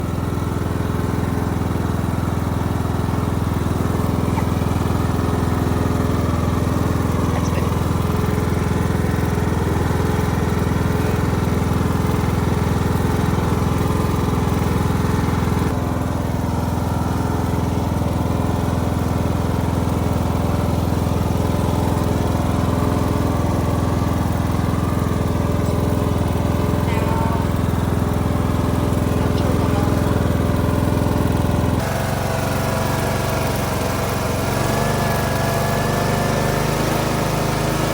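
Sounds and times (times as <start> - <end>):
lawnmower engine running: 0.0 - 37.9.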